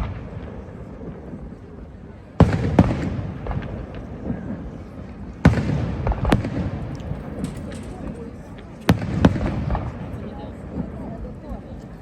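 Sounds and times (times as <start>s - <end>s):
fireworks bangs: 0.0s - 11.7s
small fireworks cracks: 0.0s - 12.0s.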